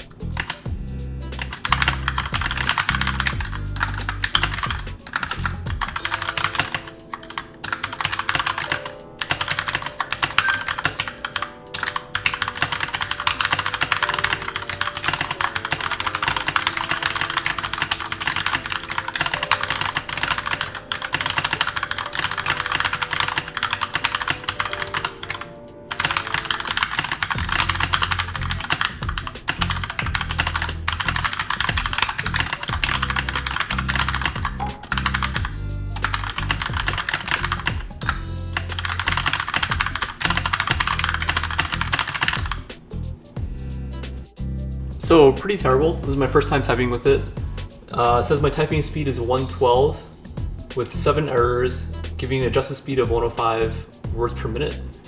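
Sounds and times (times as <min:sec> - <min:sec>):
soft background music: 0:00.0 - 0:55.0
fast typing on mechanical keyboard: 0:00.2 - 0:00.8, 0:01.4 - 0:42.7.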